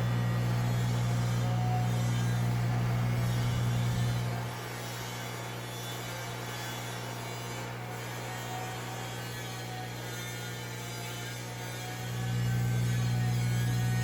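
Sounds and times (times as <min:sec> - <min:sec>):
low electrical hum: 0:00.0 - 0:04.8, 0:12.0 - 0:14.0.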